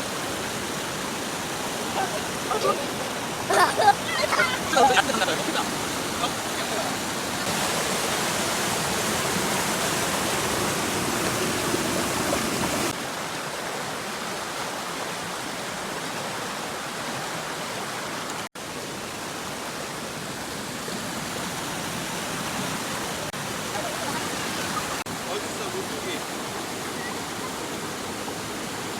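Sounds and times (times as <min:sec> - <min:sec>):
stream water rushing: 0:00.0 - 0:28.9.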